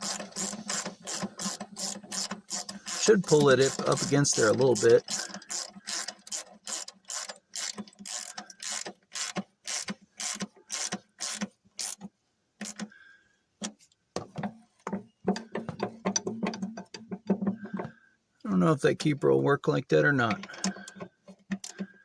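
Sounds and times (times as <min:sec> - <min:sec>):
ratchet wrench clicking: 0:00.0 - 0:12.0.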